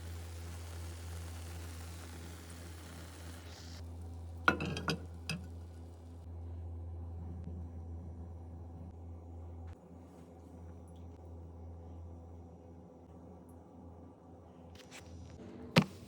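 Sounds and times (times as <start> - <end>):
sizzling hiss: 0.0 - 5.5
low steady hum: 0.0 - 9.7
cookware clinking: 4.5 - 5.6.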